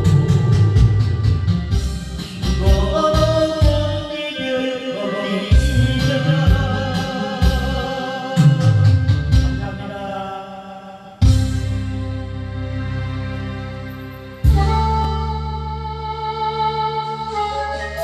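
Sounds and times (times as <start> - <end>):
low pulsing bass: 0.0 - 4.0, 5.5 - 7.9, 8.6 - 9.8, 11.2 - 18.0.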